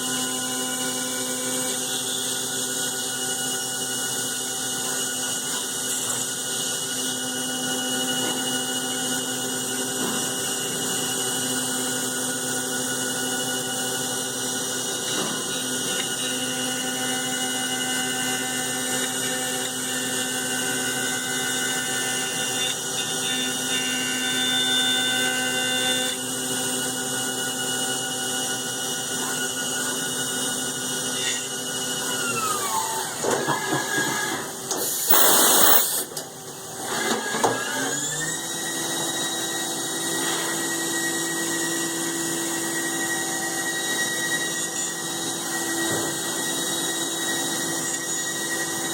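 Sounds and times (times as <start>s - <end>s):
milling machine whining: 31.3s - 39.2s.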